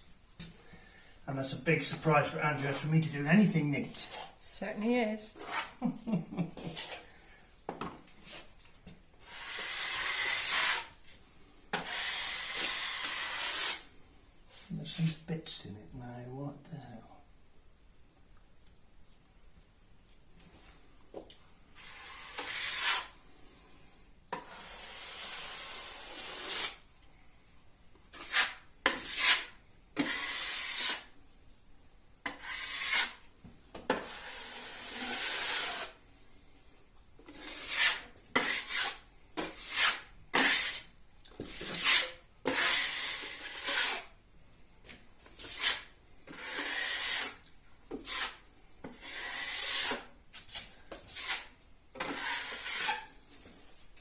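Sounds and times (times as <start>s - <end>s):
knife scraping filler on plasterboard: 5.4s - 5.8s, 6.6s - 7.1s, 9.2s - 11.0s, 11.7s - 13.9s, 21.8s - 23.2s, 24.3s - 26.8s, 28.1s - 31.1s, 32.2s - 36.0s, 37.2s - 44.2s, 45.4s - 53.2s.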